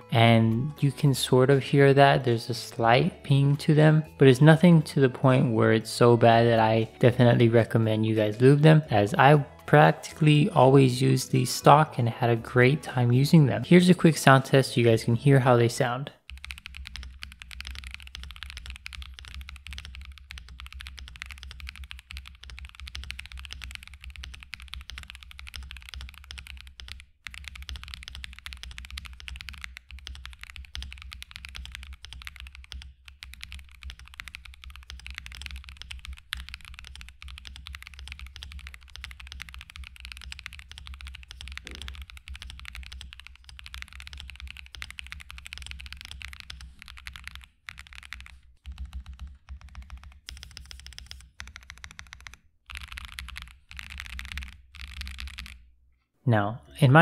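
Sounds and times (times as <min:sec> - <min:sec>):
fast typing on mechanical keyboard: 0:16.2 - 0:55.6.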